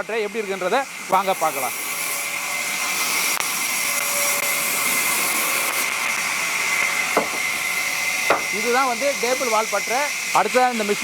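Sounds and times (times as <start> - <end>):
sawmill machinery hissing: 0.0 - 11.0.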